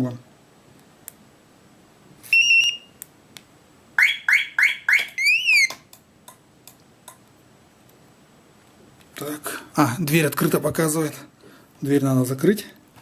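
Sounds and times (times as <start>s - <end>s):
car alarm beeps: 2.4s - 3.0s.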